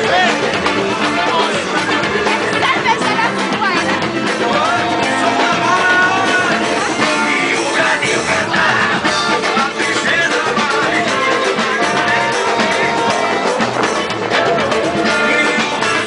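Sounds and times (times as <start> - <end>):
carnival band music: 0.0 - 16.0
person singing: 4.2 - 16.0.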